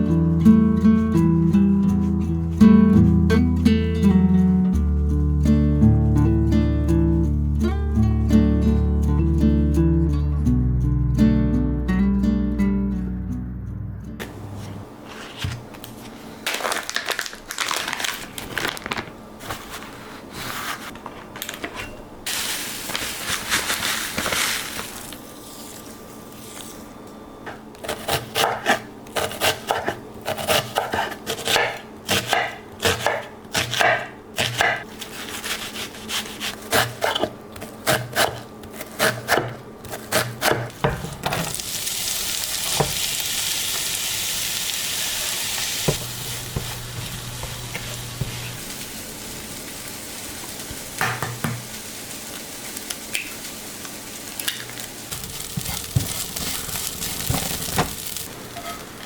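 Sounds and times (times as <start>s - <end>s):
kitchen knocks and scrapes: 14.2s - 15.7s, 40.2s - 41.5s
food sizzling in a frying pan: 22.3s - 25.7s, 41.5s - 58.8s.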